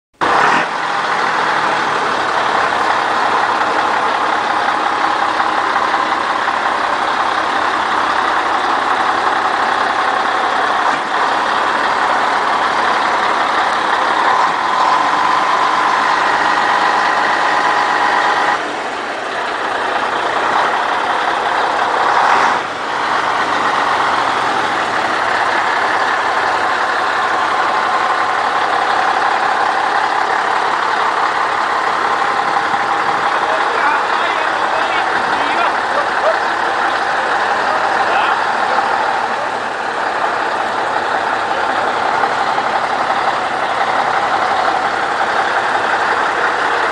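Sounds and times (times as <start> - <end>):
truck diesel engine running: 0.1 - 46.9.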